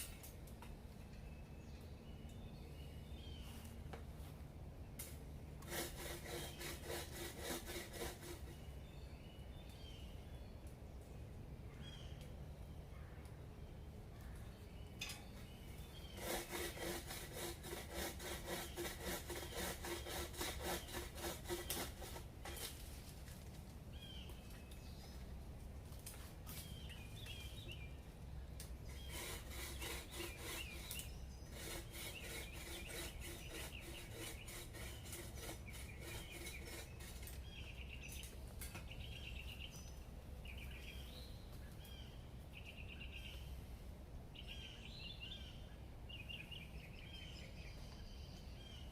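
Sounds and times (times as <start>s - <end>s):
birds chirping: 0.0s - 43.6s, 44.3s - 48.9s
saw cutting through branch: 5.0s - 8.8s, 16.0s - 23.1s, 28.8s - 38.4s.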